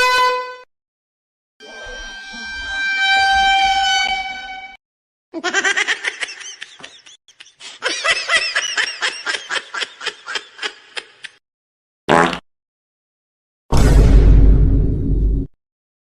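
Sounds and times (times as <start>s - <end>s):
cartoonish high-pitched giggling: 5.4s - 11.4s.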